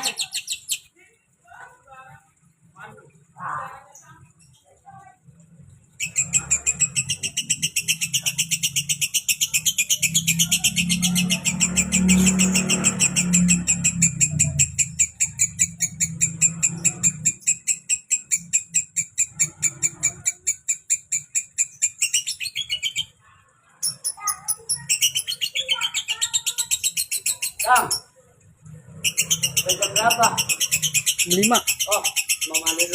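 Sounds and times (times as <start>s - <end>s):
lovebird chattering chirps: 0.0s - 32.9s.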